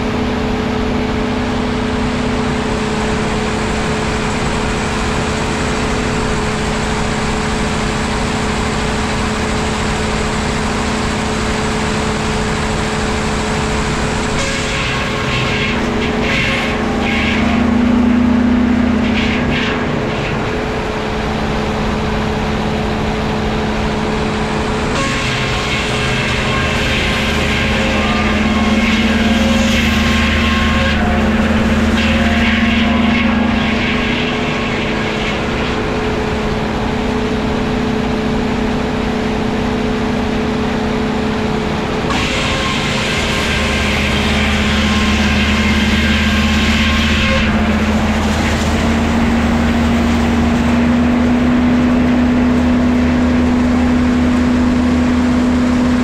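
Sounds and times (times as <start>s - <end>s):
harsh high-pitched machine noise: 0.0s - 56.0s
woodworking machinery humming: 0.0s - 56.0s.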